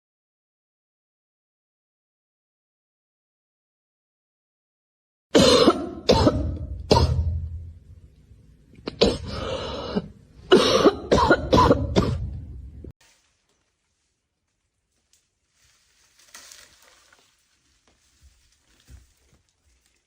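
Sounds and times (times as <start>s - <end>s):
person coughing: 5.4s - 7.5s, 8.8s - 12.5s.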